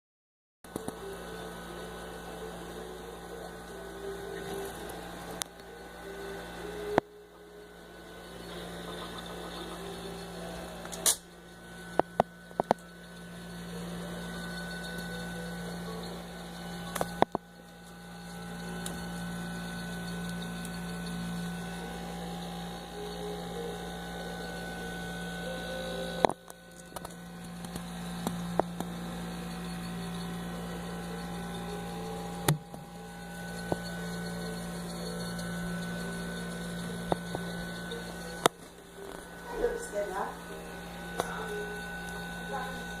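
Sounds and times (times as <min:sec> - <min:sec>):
refrigerator humming: 0:00.6 - 0:43.0.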